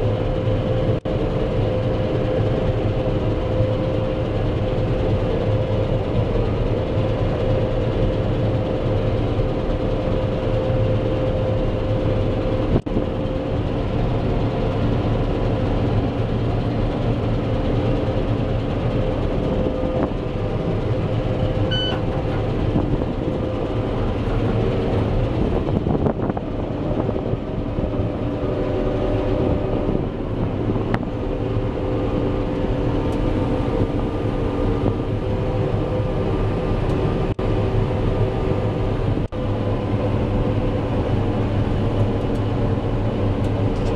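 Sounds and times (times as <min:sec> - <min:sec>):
combine harvester drone: 0:00.0 - 0:43.9
short electronic beep: 0:21.7 - 0:22.0.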